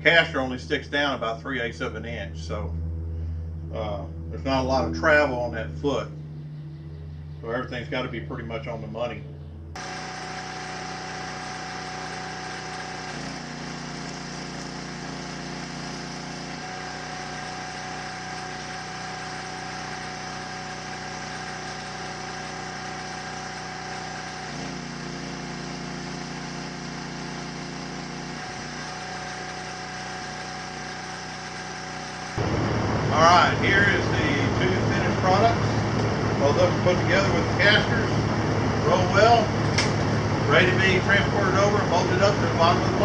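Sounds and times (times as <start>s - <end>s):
low drone: 0.0s - 15.0s, 30.1s - 43.0s
machine humming: 0.0s - 43.0s.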